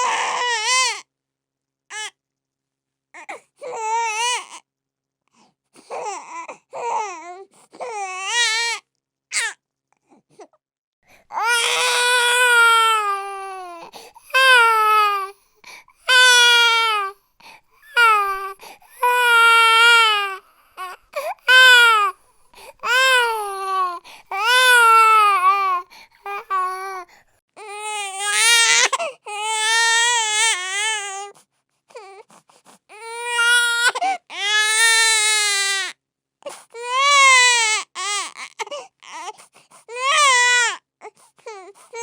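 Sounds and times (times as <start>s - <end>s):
baby crying: 0.0s - 1.0s, 3.2s - 4.6s, 5.9s - 9.6s, 11.3s - 17.2s, 17.8s - 31.3s, 32.9s - 35.9s, 36.8s - 40.8s.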